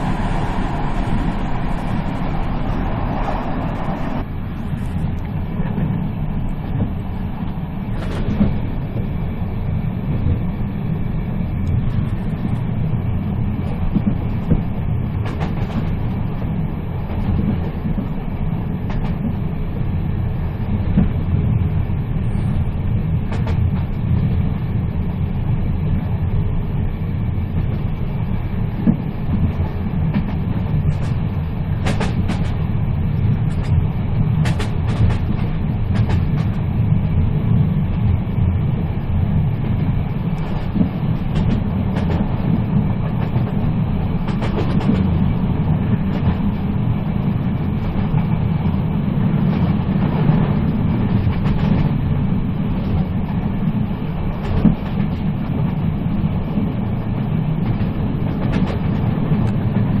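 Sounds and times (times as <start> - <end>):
train rumbling on rails: 0.0 - 60.0
sharp rail clicks: 23.3 - 24.0, 31.8 - 32.6, 34.4 - 36.6, 40.4 - 45.2.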